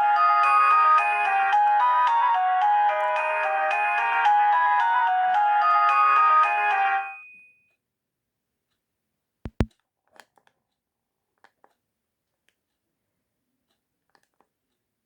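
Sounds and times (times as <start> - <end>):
sharp clicks: 9.5 - 9.7.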